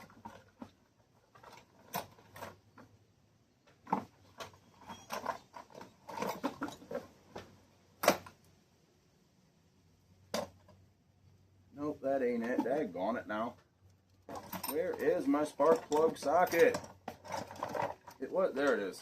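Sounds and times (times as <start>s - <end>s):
metal tools clinking: 4.4s - 7.0s, 14.0s - 19.0s.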